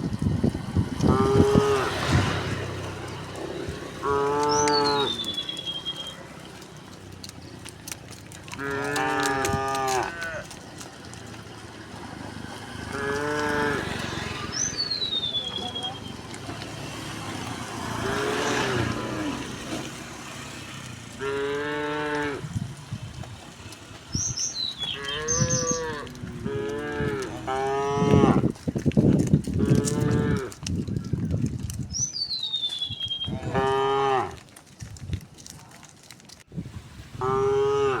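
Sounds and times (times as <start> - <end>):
cows mooing: 1.0 - 7.0, 8.2 - 22.6, 24.4 - 28.6, 29.6 - 30.6, 33.3 - 34.5, 37.1 - 38.0.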